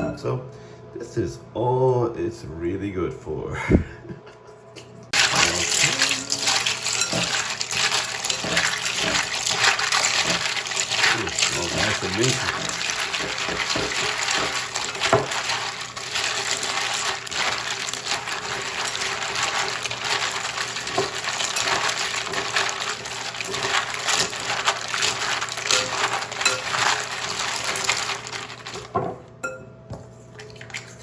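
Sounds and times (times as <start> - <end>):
water sloshing: 5.2 - 29.1, 30.2 - 31.0.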